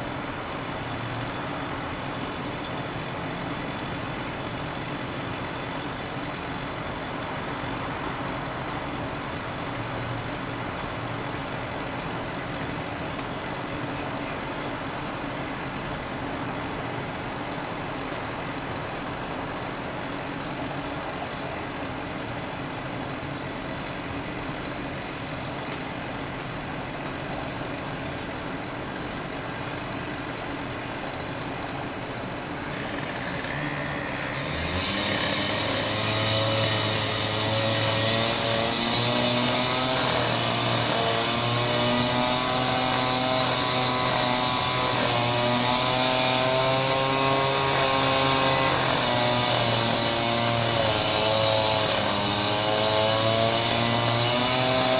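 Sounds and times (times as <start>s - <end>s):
power saw cutting: 32.4s - 54.9s.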